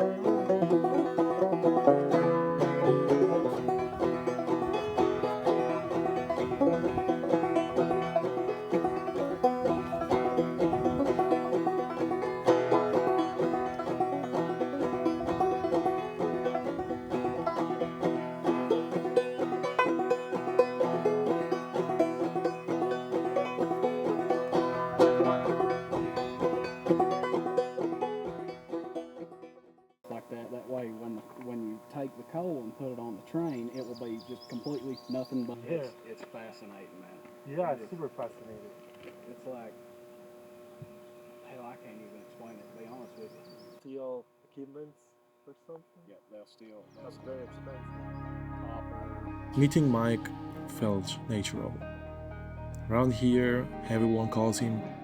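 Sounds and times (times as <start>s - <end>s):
banjo picking fast bluegrass tune: 0.0s - 30.8s.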